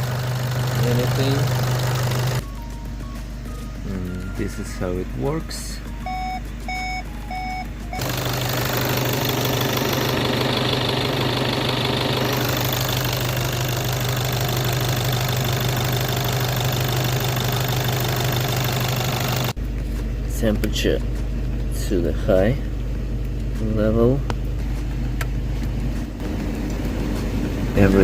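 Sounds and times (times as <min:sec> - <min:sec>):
diesel engine idling: 0:00.0 - 0:19.6
short electronic beeps: 0:06.0 - 0:08.0.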